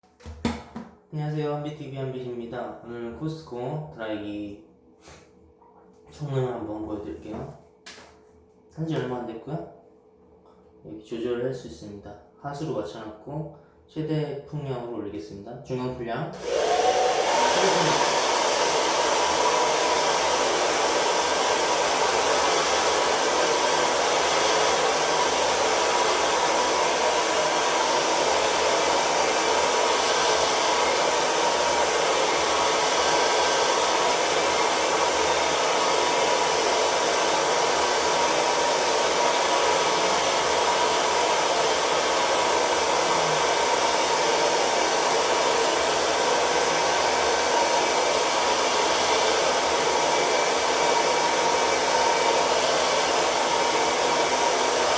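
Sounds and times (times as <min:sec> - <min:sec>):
hair dryer running: 0:00.2 - 0:01.0, 0:16.3 - 0:54.9.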